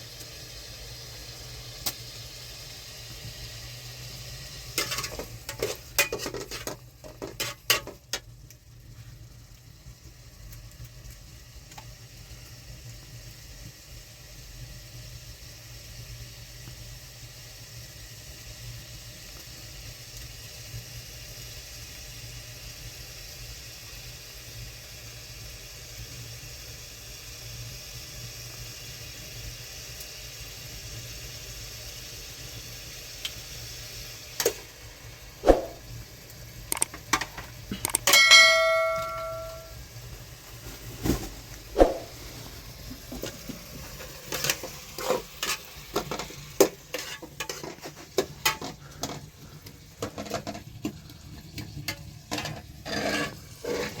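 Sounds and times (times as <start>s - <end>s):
metal pots and utensils clattering: 4.8s - 8.2s, 37.0s - 39.7s, 43.0s - 49.3s, 50.0s - 50.9s, 51.5s - 54.0s
metal pot ringing when struck: 38.0s - 39.8s.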